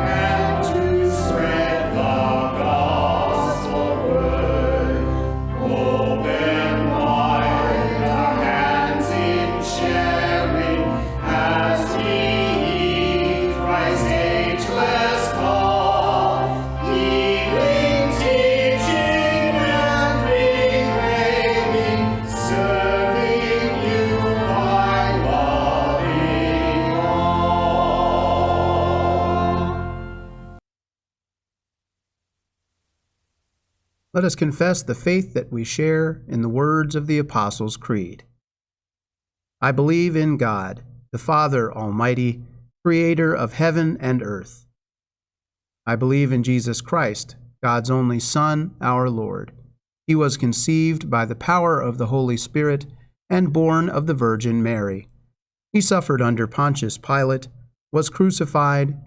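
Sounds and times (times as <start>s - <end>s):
choir singing a hymn: 0.0s - 30.6s
instrumental accompaniment: 0.0s - 30.6s.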